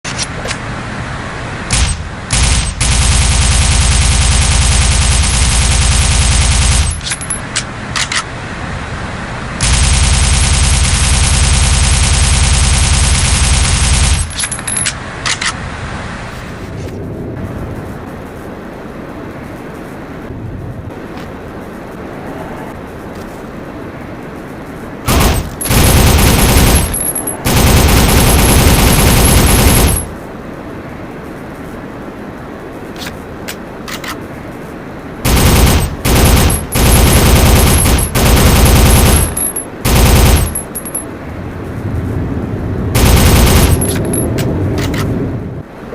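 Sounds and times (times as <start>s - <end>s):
submachine gun automatic burst: 25.1s - 30.1s, 35.3s - 40.7s, 43.0s - 44.0s.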